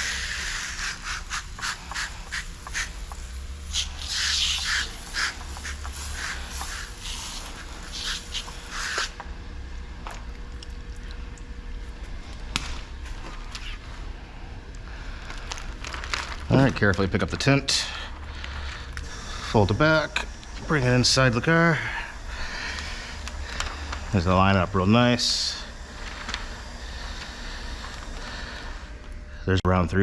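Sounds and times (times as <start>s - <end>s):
spray bottle hissing: 0.0s - 9.2s.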